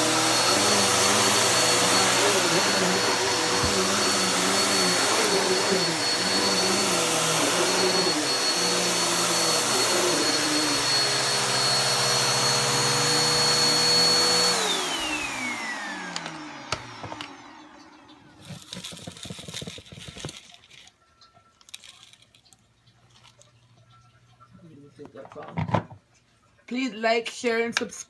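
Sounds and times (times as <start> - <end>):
vacuum cleaner running: 0.0 - 20.4.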